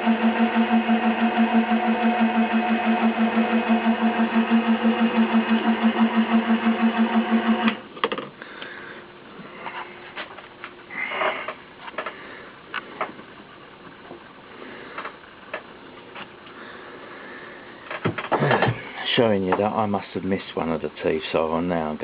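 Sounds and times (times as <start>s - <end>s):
milling machine pulsing hum: 0.0s - 21.6s.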